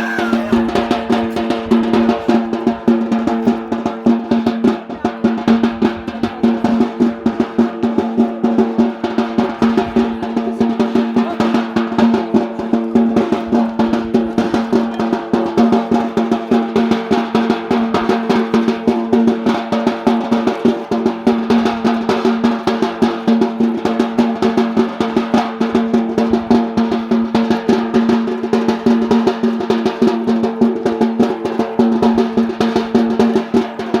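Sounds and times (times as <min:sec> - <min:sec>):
fast drumming: 0:00.0 - 0:34.0.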